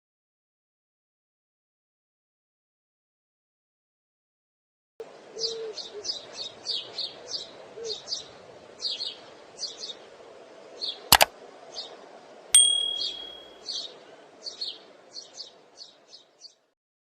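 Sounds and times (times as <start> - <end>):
bright metallic ding: 12.6 - 13.6.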